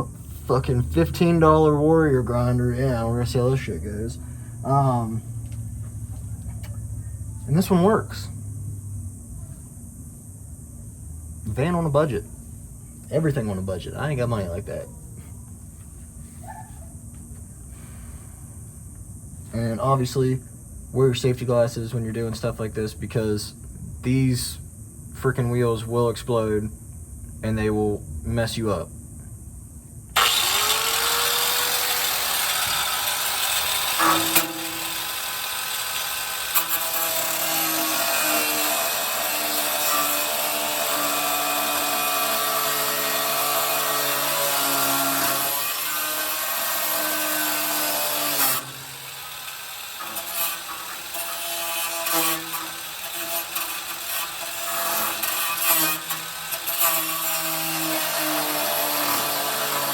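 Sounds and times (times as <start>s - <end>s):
angle grinder cutting steel: 30.2s - 59.9s.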